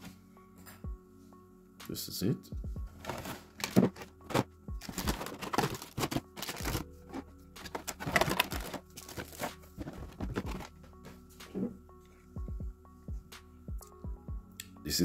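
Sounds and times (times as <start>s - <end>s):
packaging crinkling and rustling: 3.0s - 10.7s.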